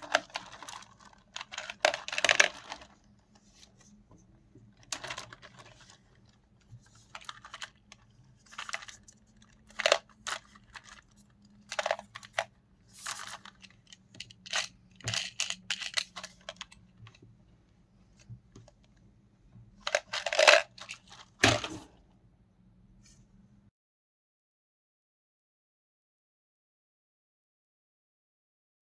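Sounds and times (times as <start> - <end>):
packaging rustling and crinkling: 0.0 - 3.8, 4.8 - 16.8.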